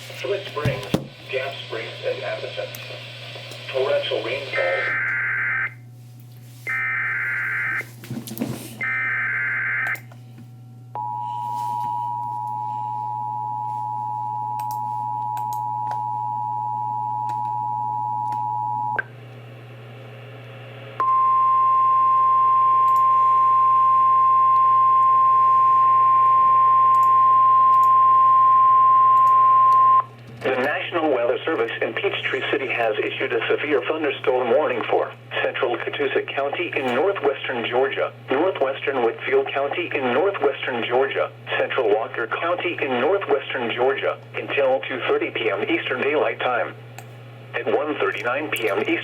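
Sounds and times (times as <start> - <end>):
static hiss: 0.0 - 5.0
single-tone warning alarm: 6.7 - 7.9, 8.8 - 10.0, 10.9 - 19.0, 21.0 - 30.1.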